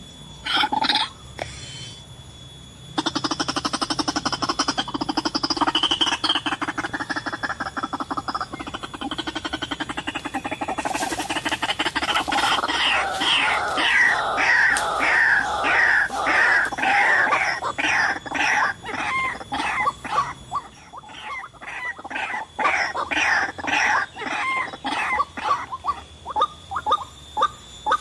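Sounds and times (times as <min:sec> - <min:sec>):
waterhen calling: 0:11.3 - 0:28.0.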